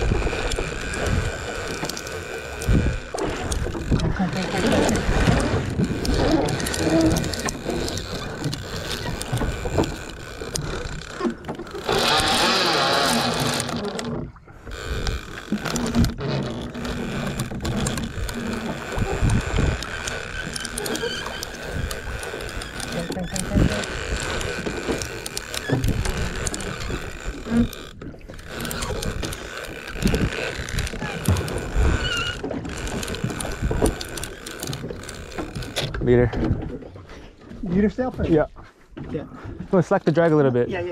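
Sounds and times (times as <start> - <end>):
irregular clicks and knocks: 0.0 - 36.8
low boat rumble: 0.0 - 40.9
wind and water rushing: 0.0 - 40.9
low knocks and thumps: 34.7 - 39.8.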